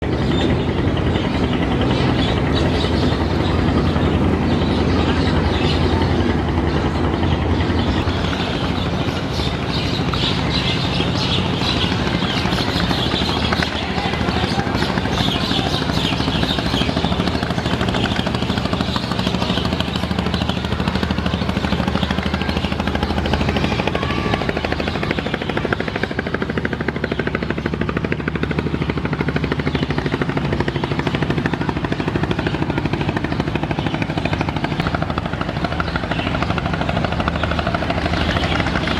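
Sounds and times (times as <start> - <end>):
boat diesel engines droning: 0.0 - 38.9.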